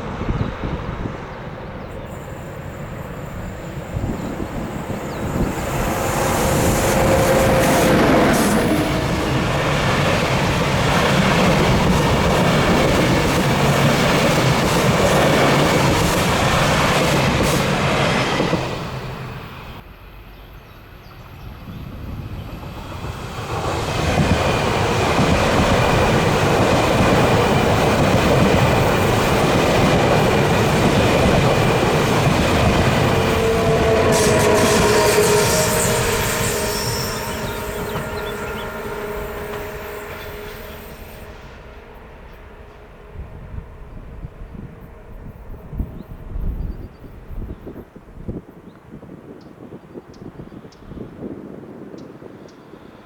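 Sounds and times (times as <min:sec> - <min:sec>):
train wheel squeal: 0:00.2 - 0:10.2, 0:32.6 - 0:47.6.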